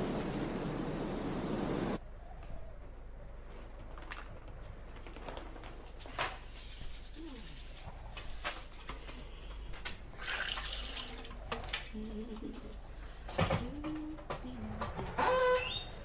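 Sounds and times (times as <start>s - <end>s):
gusting wind: 0.0s - 2.0s.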